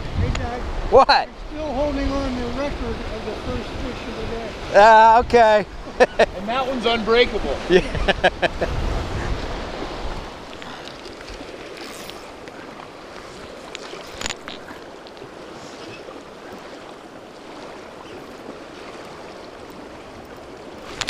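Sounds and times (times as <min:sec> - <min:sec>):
river water rushing: 0:05.7 - 0:21.0.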